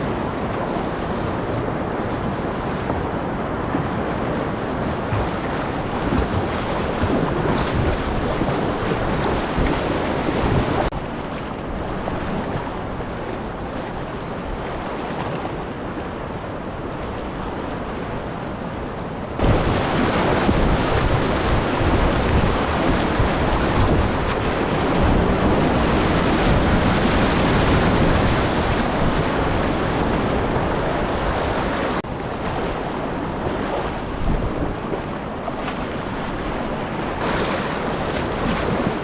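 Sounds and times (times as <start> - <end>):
water splashing: 0.0 - 11.8, 19.3 - 25.7, 28.6 - 39.0
wind buffeting microphone: 0.0 - 18.2, 19.3 - 39.0
whitewater rushing: 0.0 - 39.0.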